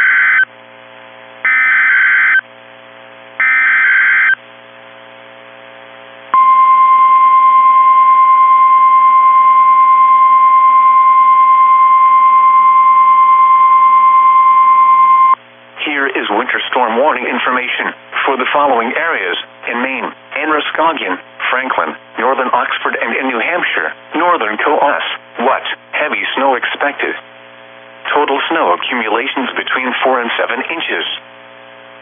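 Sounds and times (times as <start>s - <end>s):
steady warning alarm tone: 0.0s - 0.5s, 1.4s - 2.4s, 3.4s - 4.4s, 6.4s - 15.4s
buzzy digital data tones: 3.4s - 4.4s.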